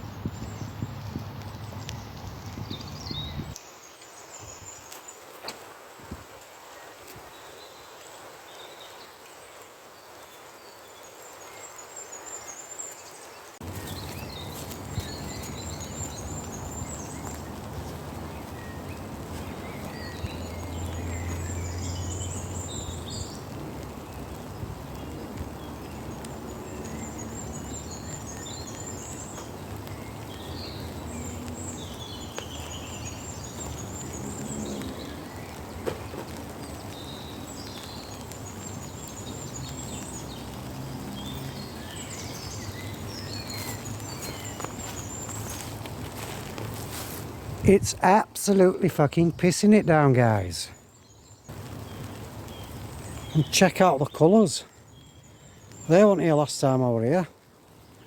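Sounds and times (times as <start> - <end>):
songbirds trilling: 0.0 - 5.5, 6.7 - 58.0
heavy rain hissing: 13.5 - 58.0.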